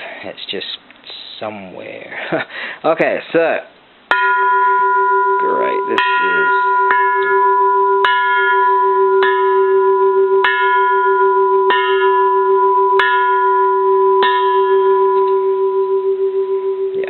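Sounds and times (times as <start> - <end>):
low wavering hum: 4.1 - 17.0
temple bell ringing: 4.1 - 17.0.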